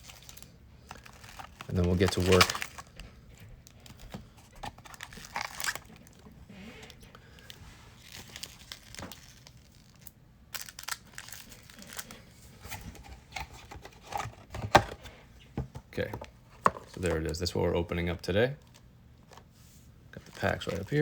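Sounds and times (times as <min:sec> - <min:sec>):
foil packs crinkling: 0:00.0 - 0:03.0, 0:03.6 - 0:12.9, 0:20.2 - 0:21.0.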